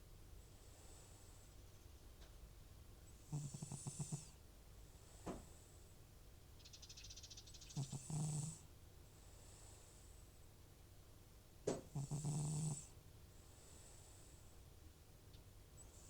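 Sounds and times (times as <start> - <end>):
cat breathing softly: 0.4 - 1.6, 9.1 - 10.5, 13.3 - 14.7
cat snoring: 3.1 - 4.4, 7.7 - 8.7, 11.8 - 13.0.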